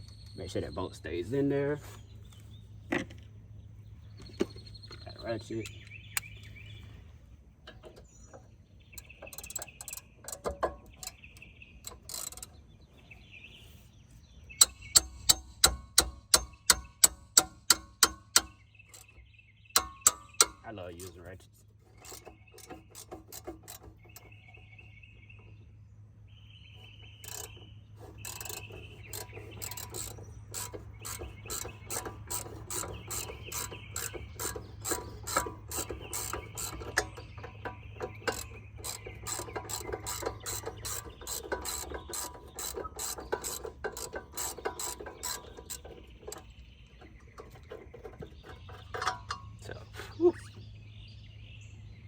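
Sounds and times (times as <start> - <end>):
socket ratchet clicking: 9.0 - 11.2, 27.2 - 46.5.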